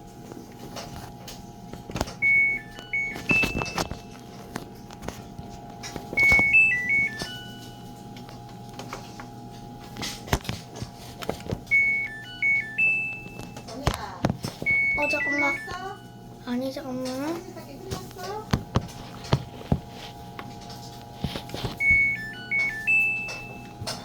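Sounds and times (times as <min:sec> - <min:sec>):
faint steady hum: 0:00.0 - 0:24.0
electronic beep melody: 0:02.2 - 0:03.9, 0:06.2 - 0:07.8, 0:11.7 - 0:13.6, 0:14.7 - 0:16.2, 0:21.8 - 0:23.7.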